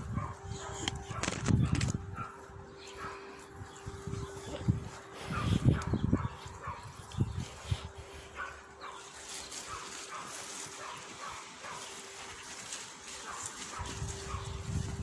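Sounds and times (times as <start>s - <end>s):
warning siren steady tone: 0.0s - 8.8s.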